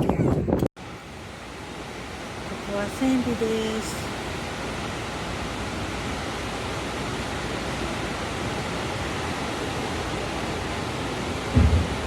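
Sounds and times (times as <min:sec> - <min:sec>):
wind on microphone: 0:00.0 - 0:00.7
low thump: 0:11.5 - 0:12.0.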